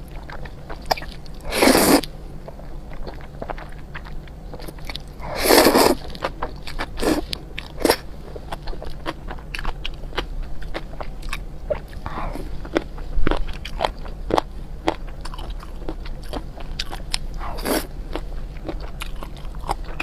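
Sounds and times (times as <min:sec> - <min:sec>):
slurping noodles: 0:01.5 - 0:02.0, 0:05.3 - 0:06.0
chewing and mouth clicks: 0:02.0 - 0:20.0.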